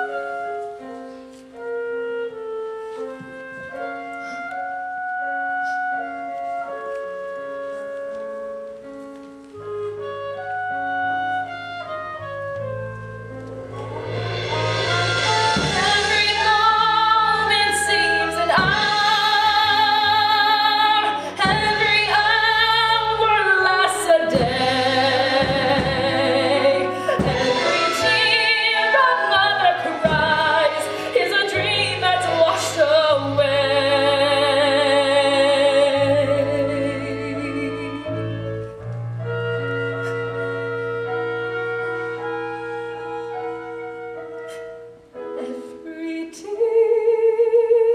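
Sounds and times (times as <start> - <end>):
orchestral accompaniment: 0.0 - 46.0
woman singing a ballad: 15.6 - 38.3, 45.3 - 47.9.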